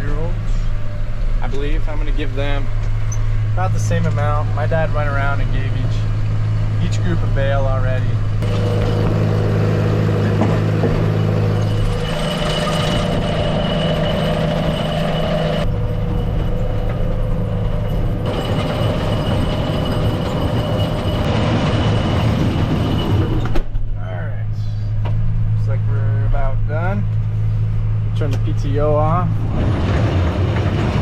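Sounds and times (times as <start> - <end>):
tractor engine running: 0.0 - 23.9
high mechanical whine: 0.0 - 31.0.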